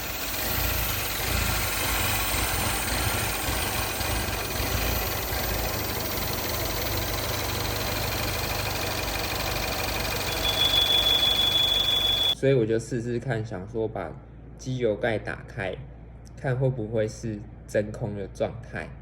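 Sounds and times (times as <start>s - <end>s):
car engine idling: 0.0s - 12.4s.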